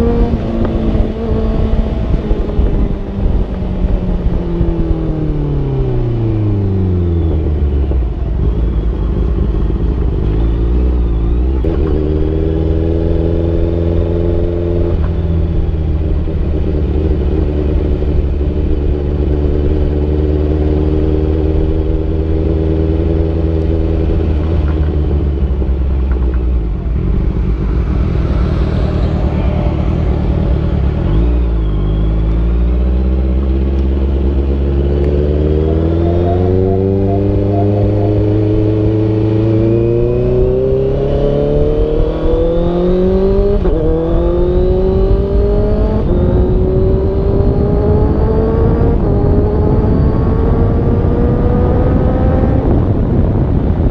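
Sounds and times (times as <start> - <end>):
motorcycle engine running: 33.0 - 40.6.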